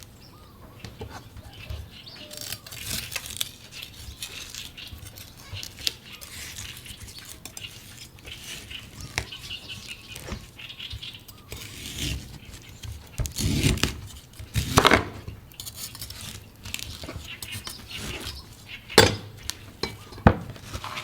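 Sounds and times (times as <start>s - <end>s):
knife scraping coconut: 0.8s - 21.0s
knife chopping coconut: 1.0s - 9.2s, 11.4s - 18.4s.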